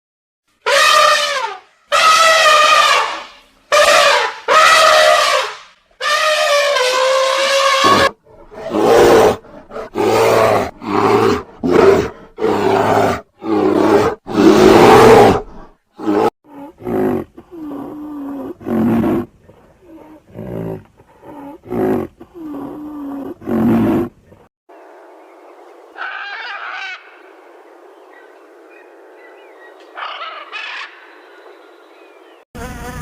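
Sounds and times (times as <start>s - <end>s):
big cat roaring: 7.6s - 24.2s.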